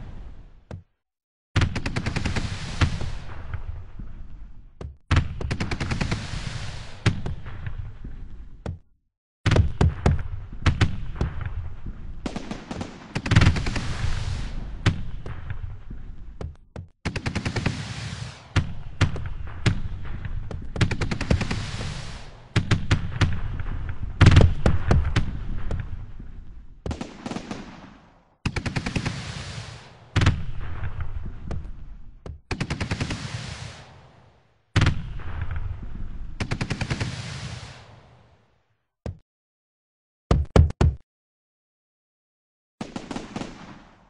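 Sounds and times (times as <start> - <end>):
fireworks popping and crackling: 1.6 - 4.4, 5.0 - 8.4, 9.5 - 16.4, 17.1 - 38.1.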